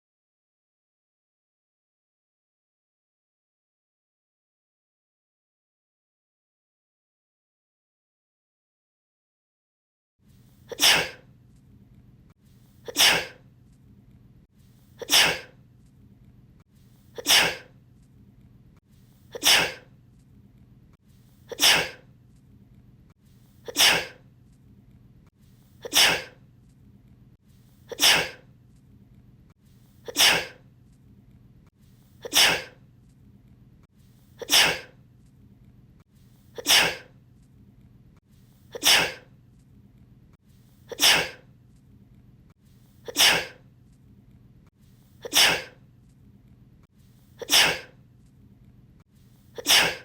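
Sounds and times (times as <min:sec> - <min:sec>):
person sneezing: 0:10.6 - 0:11.3, 0:12.8 - 0:13.4, 0:15.0 - 0:15.6, 0:17.1 - 0:17.8, 0:19.3 - 0:19.9, 0:21.4 - 0:22.1, 0:23.6 - 0:24.2, 0:25.8 - 0:26.4, 0:27.8 - 0:28.5, 0:30.0 - 0:30.7, 0:32.2 - 0:32.8, 0:34.4 - 0:35.0, 0:36.5 - 0:37.2, 0:38.7 - 0:39.3, 0:40.8 - 0:41.5, 0:43.0 - 0:43.7, 0:45.2 - 0:45.8, 0:47.4 - 0:48.0, 0:49.5 - 0:50.0.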